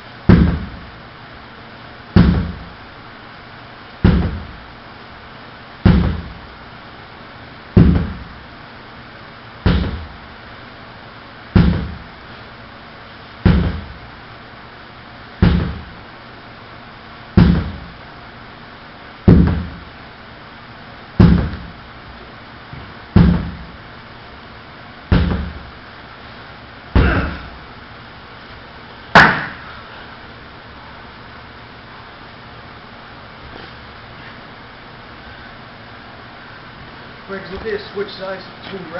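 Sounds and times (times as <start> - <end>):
sledgehammer thuds: 0.3 - 0.9, 2.2 - 2.8, 4.0 - 4.6, 5.8 - 6.4, 7.8 - 8.4, 9.6 - 10.2, 11.5 - 12.2, 13.4 - 14.1, 15.4 - 16.0, 17.4 - 18.0, 19.2 - 19.9, 21.2 - 21.8, 22.8 - 23.8, 25.1 - 25.7, 26.9 - 27.6, 29.1 - 29.7.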